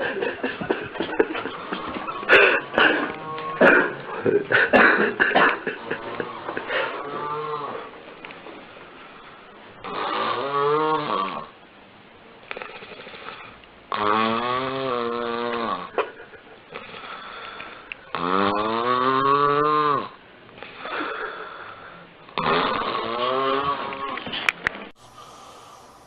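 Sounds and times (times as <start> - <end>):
person snoring loudly: 0.0 - 8.0, 9.8 - 11.5, 12.7 - 16.0, 16.7 - 24.4, 25.0 - 26.0
rasping breaths: 0.0 - 10.4, 16.7 - 26.0.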